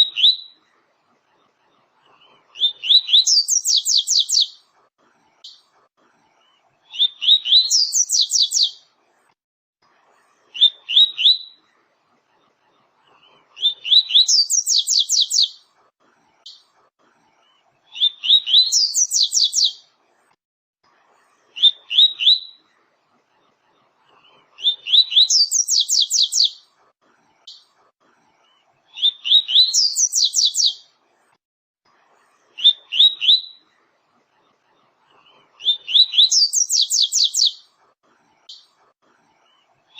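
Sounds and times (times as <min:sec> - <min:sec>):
bird singing whistled phrases: 0:02.8 - 0:04.6, 0:07.0 - 0:08.8, 0:18.0 - 0:19.8, 0:29.0 - 0:30.8, 0:35.6 - 0:37.6.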